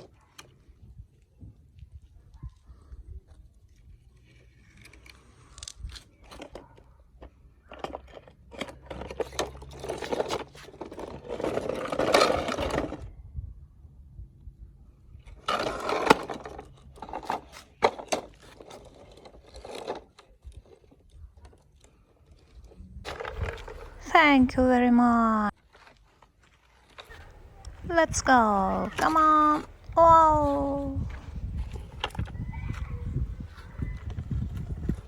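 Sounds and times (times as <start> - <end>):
toy cars scraping and clicking: 3.6 - 13.1, 15.2 - 24.3, 25.7 - 30.0.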